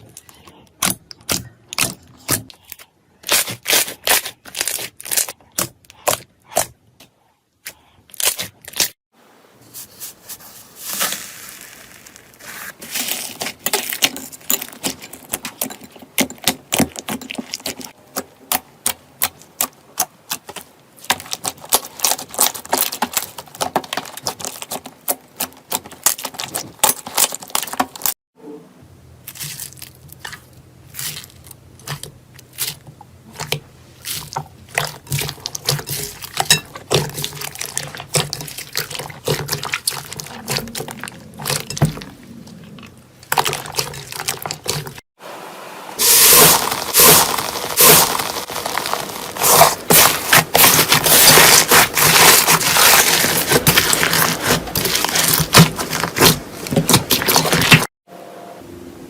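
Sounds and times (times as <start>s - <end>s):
slime squeezed by hand: 46.0s - 57.9s.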